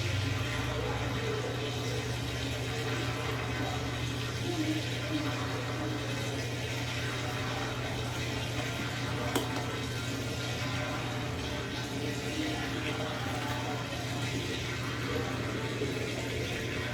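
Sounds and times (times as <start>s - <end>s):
washing machine water rushing: 0.0s - 16.9s.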